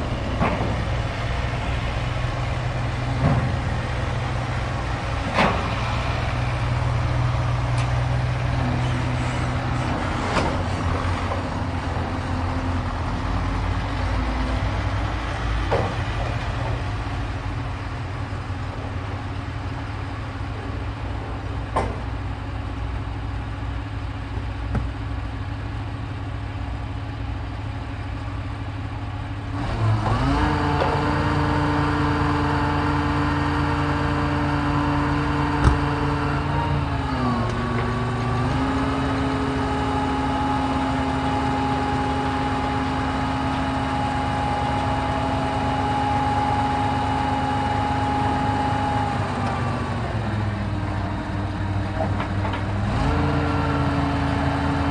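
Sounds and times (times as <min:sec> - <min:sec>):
heavy vehicle engine revving: 0:29.1 - 0:54.9.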